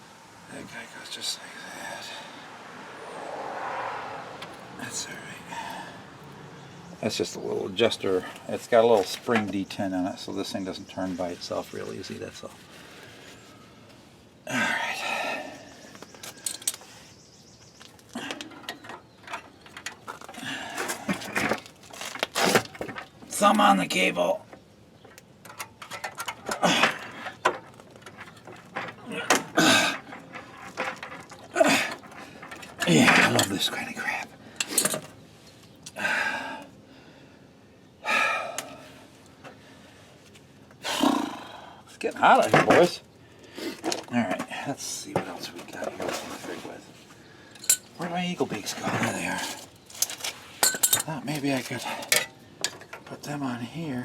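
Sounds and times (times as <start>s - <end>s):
metal tools clinking and scraping: 16.0s - 16.9s, 18.0s - 23.8s, 25.1s - 34.0s, 34.6s - 35.2s, 43.8s - 46.8s, 47.5s - 53.2s
man breathing out hard: 35.9s - 40.0s.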